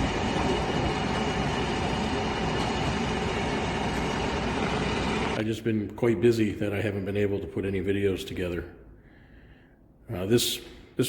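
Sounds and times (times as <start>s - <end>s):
heavy machinery rumbling: 0.0s - 5.4s.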